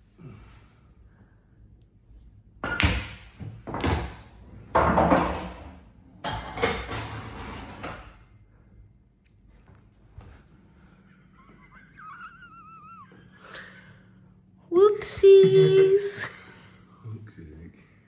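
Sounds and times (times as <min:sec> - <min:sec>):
pool balls knocking: 0:02.6 - 0:08.1.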